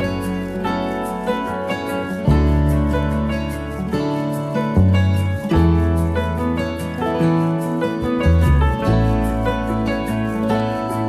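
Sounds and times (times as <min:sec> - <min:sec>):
gentle background music: 0:00.0 - 0:11.0.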